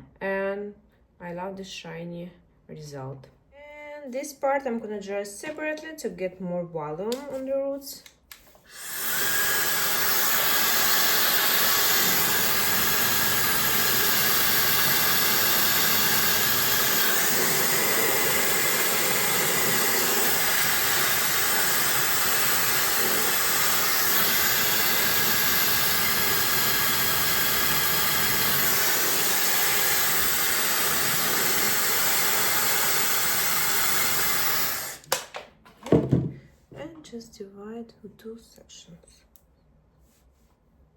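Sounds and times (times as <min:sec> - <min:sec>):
hair dryer blowing: 0:08.5 - 0:35.1.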